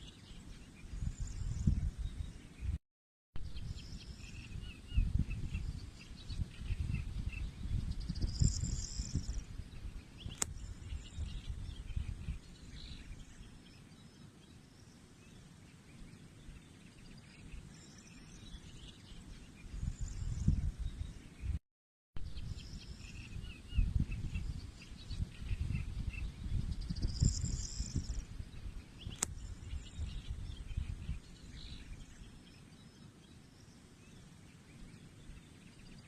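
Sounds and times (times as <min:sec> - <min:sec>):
faint bird chirps: 0:00.0 - 0:02.8, 0:03.4 - 0:21.6, 0:22.2 - 0:36.0
wind buffeting microphone: 0:00.8 - 0:02.8, 0:03.4 - 0:13.5, 0:18.4 - 0:21.6, 0:22.2 - 0:32.3
sharp click: 0:10.3 - 0:10.6, 0:29.1 - 0:29.4.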